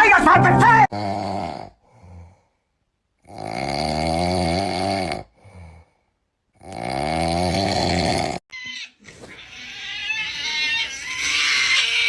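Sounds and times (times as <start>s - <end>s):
loud snoring: 0.9s - 2.5s, 3.2s - 6.0s, 6.6s - 8.4s.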